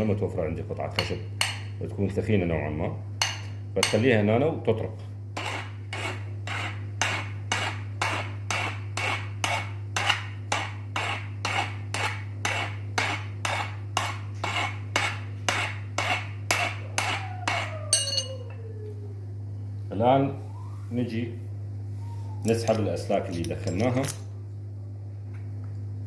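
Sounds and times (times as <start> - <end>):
steady low hum: 0.0 - 26.0
hammer tapping metal: 3.2 - 4.0.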